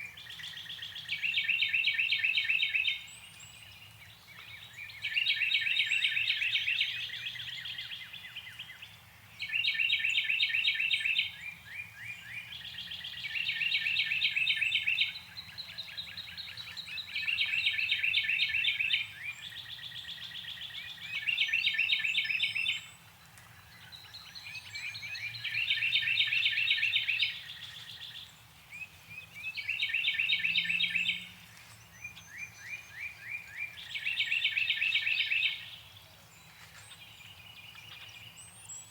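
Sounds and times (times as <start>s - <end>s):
bird singing whistled notes: 23.8s - 38.9s.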